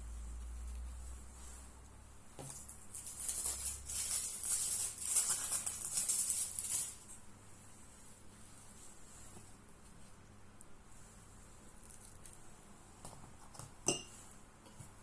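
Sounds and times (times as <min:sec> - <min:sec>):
wrapper crinkling and rustling: 0:02.4 - 0:07.2.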